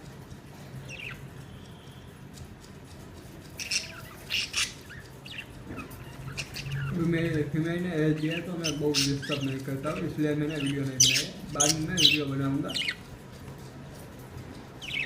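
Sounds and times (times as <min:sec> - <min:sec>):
budgerigars chirping: 0:00.8 - 0:02.0, 0:03.4 - 0:13.2, 0:14.7 - 0:15.0.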